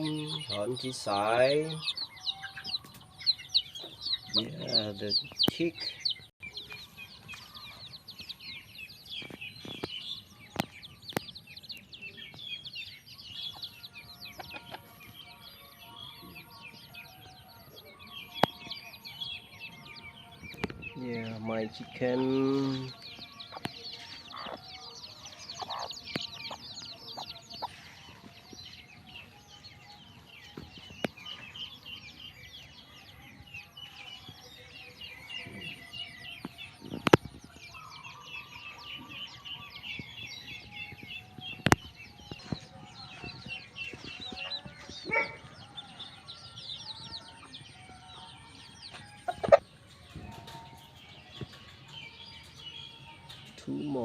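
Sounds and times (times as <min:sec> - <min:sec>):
chickens clucking: 0:00.0 - 0:12.4, 0:13.4 - 0:15.2, 0:20.5 - 0:29.3, 0:41.3 - 0:46.3, 0:48.9 - 0:52.6
chicks peeping: 0:00.0 - 0:54.0.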